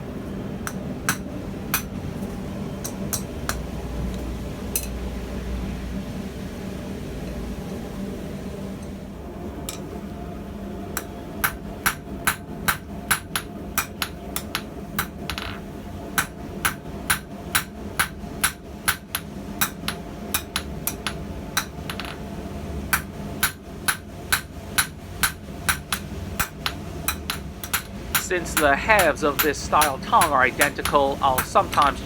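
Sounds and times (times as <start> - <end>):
steady low hum: 0.0 - 32.0
hammer striking steel on anvil: 0.6 - 1.9, 2.8 - 3.6, 11.0 - 15.6, 16.2 - 22.2, 22.9 - 32.0.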